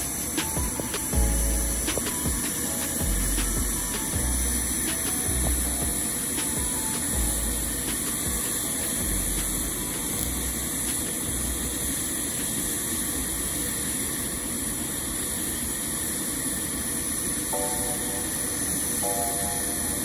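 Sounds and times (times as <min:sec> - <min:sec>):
welding arc hissing: 0:00.0 - 0:20.0.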